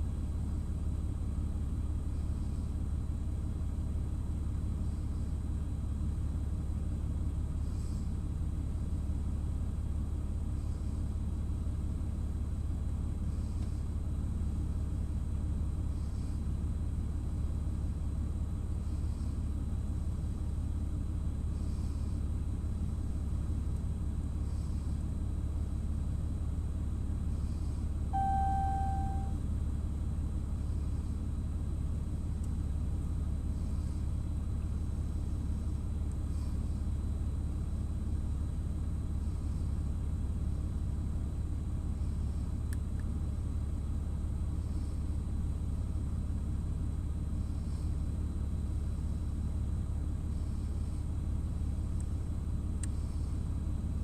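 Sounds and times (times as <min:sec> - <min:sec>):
short beep tone: 0:28.1 - 0:29.4.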